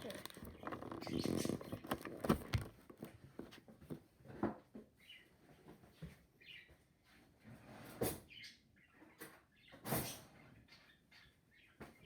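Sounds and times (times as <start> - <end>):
cardboard box and plastic packaging opened: 0.0 - 3.1
plastic squeaks: 0.0 - 3.1.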